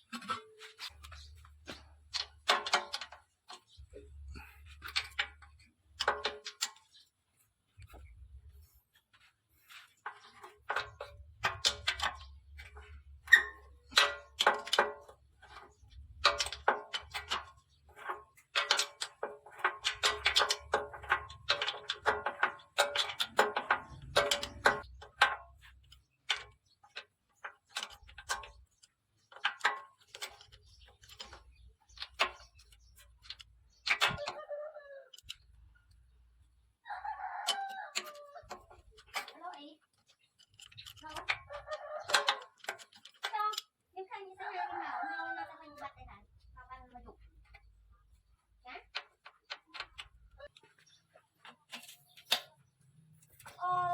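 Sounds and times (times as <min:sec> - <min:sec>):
metallic clicks and clinks: 0:09.7 - 0:34.4, 0:35.0 - 0:36.2, 0:37.4 - 0:43.8.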